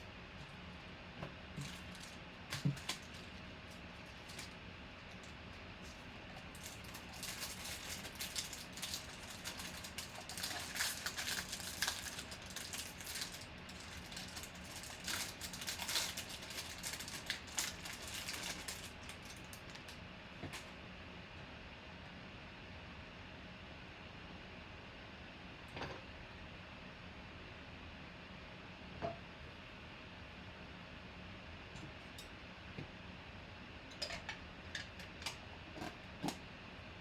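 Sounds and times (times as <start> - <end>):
card packaging crinkling: 1.6 - 20.0.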